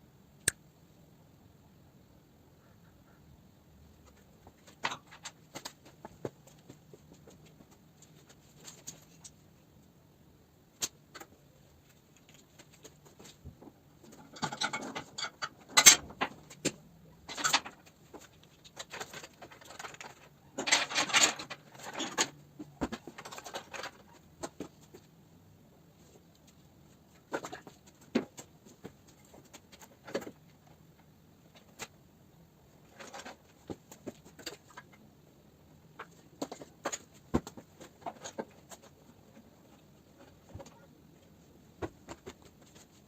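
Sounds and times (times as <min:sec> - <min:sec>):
metal rattling and scraping: 0:17.3 - 0:24.2.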